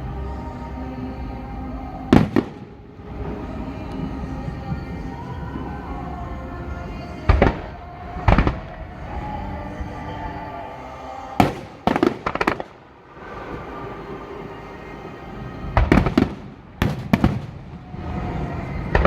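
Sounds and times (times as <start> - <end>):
music playing: 0.0 - 19.0
fireworks booming: 2.1 - 5.6, 11.4 - 14.5, 15.5 - 19.0
fireworks crackling: 2.1 - 6.3, 11.4 - 19.0.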